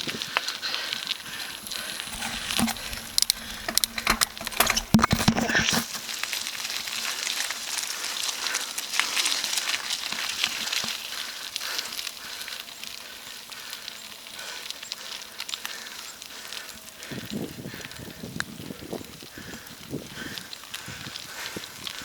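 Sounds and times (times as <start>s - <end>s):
bicycle tyres crackling: 0.0s - 22.0s
wind noise: 17.0s - 22.0s.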